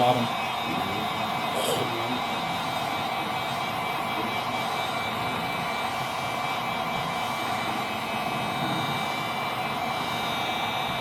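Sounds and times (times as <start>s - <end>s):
heat gun blowing air: 7.0s - 11.0s.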